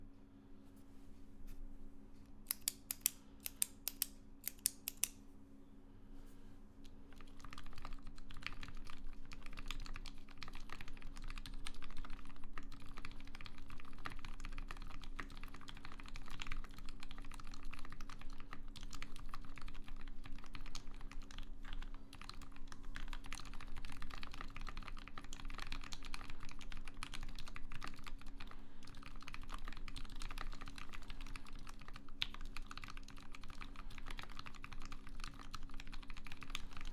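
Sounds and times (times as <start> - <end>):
sharp crisp clicks: 2.5 - 5.2
mechanical keyboard typing: 7.1 - 36.9.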